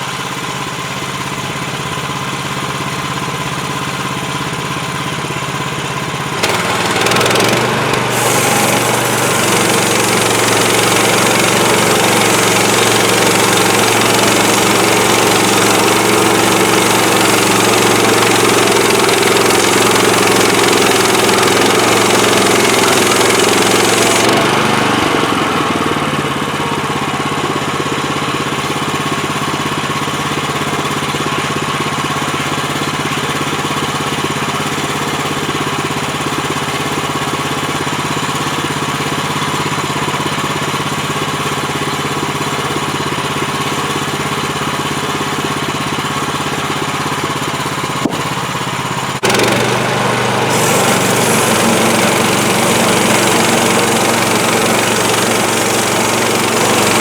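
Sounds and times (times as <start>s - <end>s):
sawmill gas engine running: 0.0s - 57.0s
band blade cutting log: 6.4s - 26.3s, 48.0s - 48.4s, 49.2s - 57.0s.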